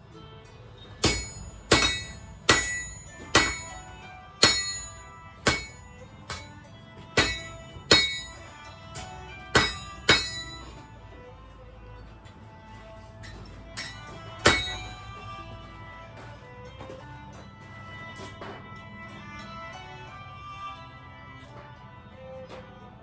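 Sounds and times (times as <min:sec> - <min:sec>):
hammer striking steel on anvil: 0:01.0 - 0:11.0, 0:13.2 - 0:15.4.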